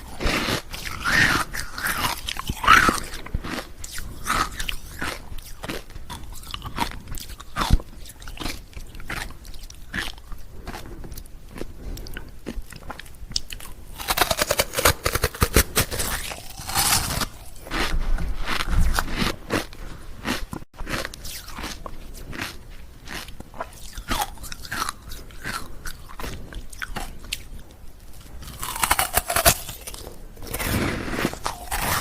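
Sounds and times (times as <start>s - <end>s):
ice cubes crunching: 13.6s - 17.9s, 28.4s - 32.0s.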